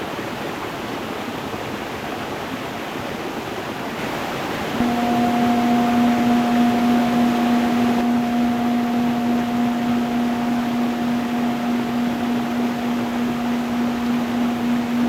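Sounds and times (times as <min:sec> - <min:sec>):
low humming drone: 0:04.6 - 0:15.0.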